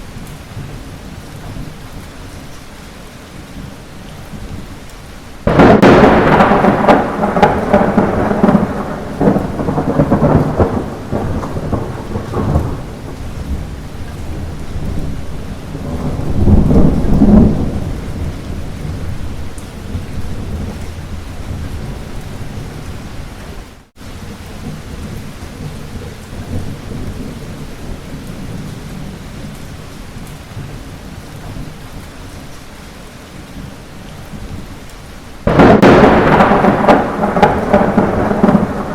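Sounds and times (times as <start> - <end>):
light rain: 0.0 - 38.9
thunder rumbling: 5.4 - 23.7, 24.5 - 32.1, 35.4 - 38.9.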